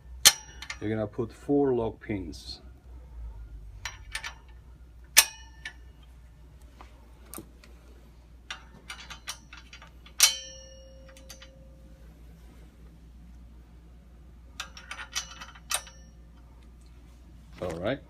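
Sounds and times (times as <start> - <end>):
metal pins clinking into frame: 0.2 - 0.9, 3.8 - 6.1, 8.4 - 11.8, 14.5 - 16.5
sharp metal clangs: 0.2 - 0.9, 3.8 - 6.0, 8.5 - 11.8, 14.6 - 16.3.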